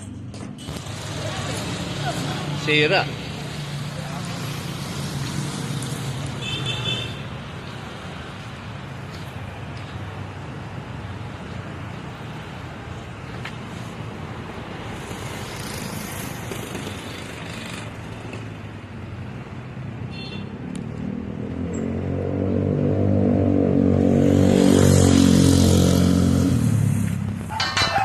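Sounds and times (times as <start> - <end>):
vehicle engine passing by: 20.8 - 27.5.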